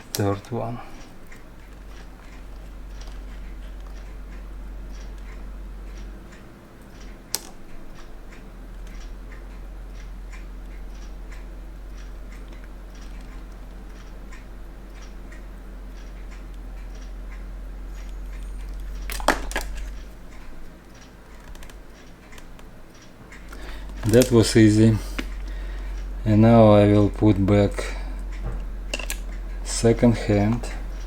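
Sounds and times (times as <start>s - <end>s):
clock ticking: 0.0s - 31.0s
clatter of small clicks: 7.0s - 7.6s
low hum: 22.5s - 31.0s.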